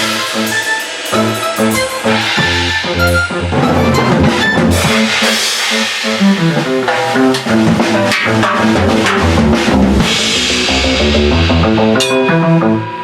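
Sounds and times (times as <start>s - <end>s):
cymbal wash: 0.0s - 13.0s
drum kit playing: 0.0s - 13.0s
guitar and bass music: 0.0s - 13.0s.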